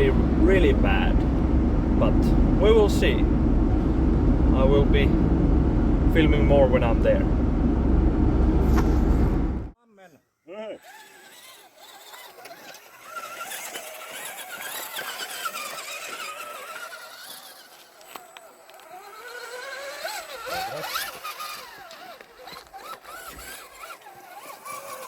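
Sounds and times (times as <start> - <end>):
small electric motor whine: 10.8 - 25.0.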